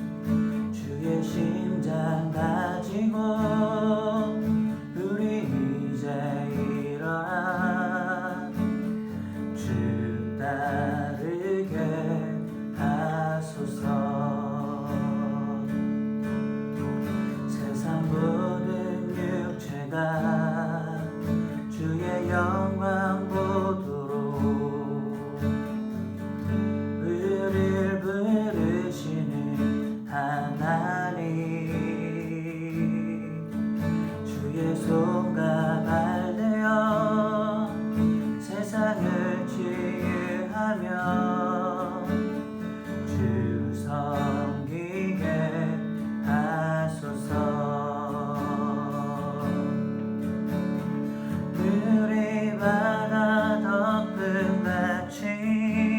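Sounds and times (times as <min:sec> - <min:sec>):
strummed acoustic guitar: 0:00.0 - 0:55.9.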